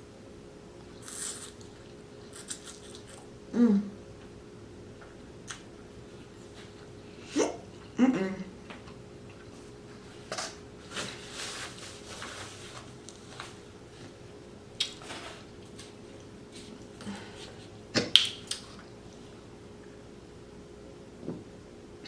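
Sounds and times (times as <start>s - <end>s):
person chewing: 0.9s - 3.3s.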